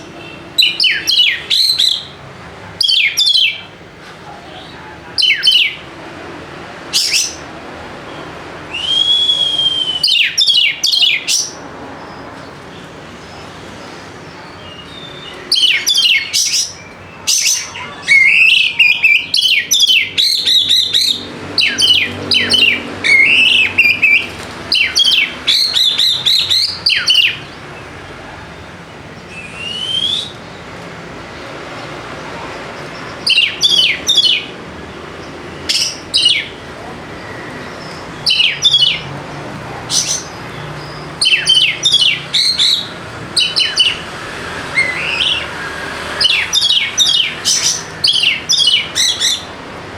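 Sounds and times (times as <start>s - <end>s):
bird singing whistled notes: 0.2s - 2.2s, 2.8s - 3.6s, 5.2s - 5.8s, 8.1s - 12.3s, 14.3s - 27.6s, 29.3s - 30.6s, 33.0s - 34.5s, 35.6s - 36.5s, 37.6s - 39.1s, 39.9s - 44.0s, 46.2s - 49.5s.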